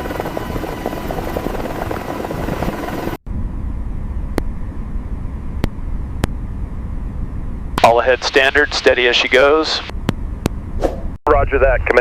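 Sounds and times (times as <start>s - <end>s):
aircraft engine drone: 0.0s - 10.8s
low engine rumble: 3.3s - 12.0s.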